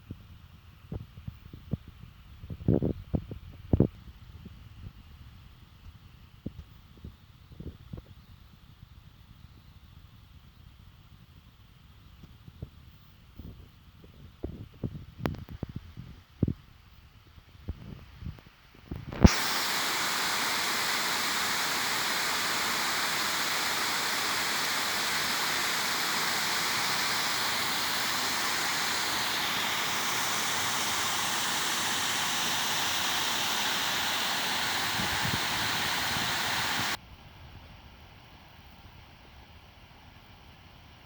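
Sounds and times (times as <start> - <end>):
steady rushing hiss: 19.1 - 37.0.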